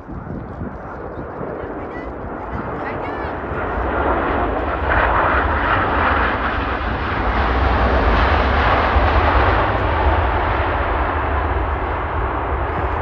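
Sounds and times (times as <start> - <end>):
jet engines roaring: 0.0 - 13.0.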